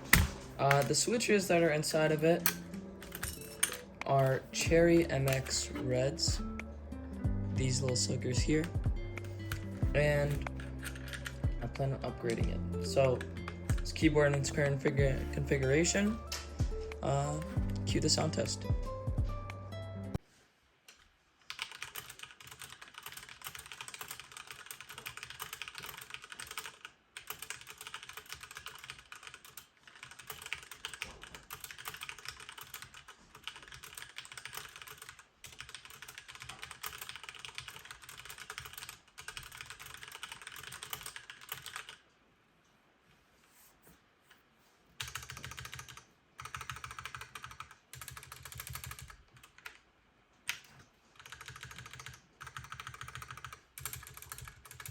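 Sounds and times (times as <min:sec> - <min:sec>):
mechanical keyboard typing: 0:01.9 - 0:06.7, 0:07.6 - 0:15.3, 0:21.5 - 0:42.0, 0:45.0 - 0:49.8, 0:50.5 - 0:54.9.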